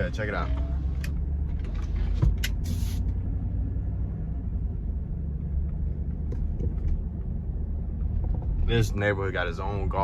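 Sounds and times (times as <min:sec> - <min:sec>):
car cabin low rumble: 0:00.0 - 0:10.0
short hiss: 0:02.6 - 0:03.1.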